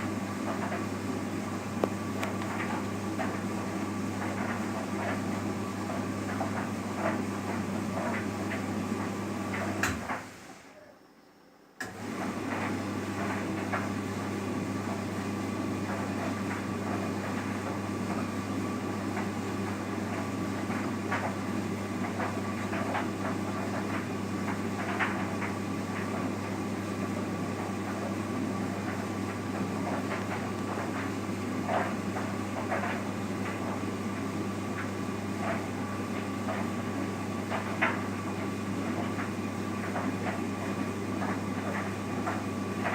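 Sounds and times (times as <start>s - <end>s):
tumble dryer motor hum: 0.0s - 10.5s, 11.8s - 42.9s
dryer click: 9.5s - 10.3s.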